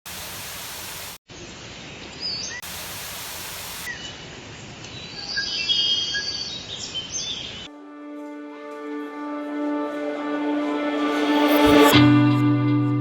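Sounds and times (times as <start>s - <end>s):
steady outdoor hiss: 0.1s - 7.7s.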